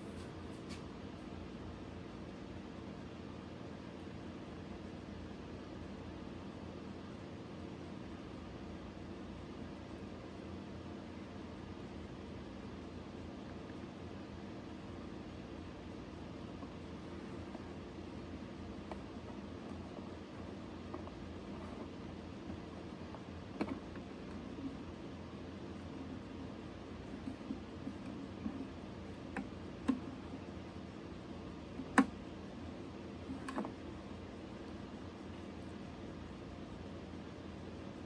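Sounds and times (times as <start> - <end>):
room hiss and hum: 0.0 - 38.0.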